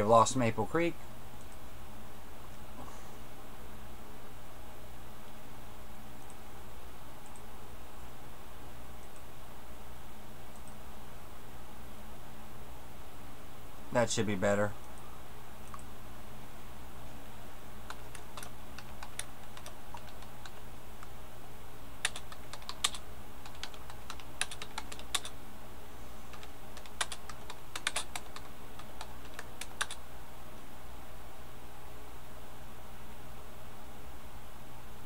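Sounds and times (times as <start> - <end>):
low electrical hum: 0.0 - 35.0
computer keyboard typing: 15.6 - 15.9, 17.8 - 21.1, 22.0 - 25.4, 26.3 - 30.0.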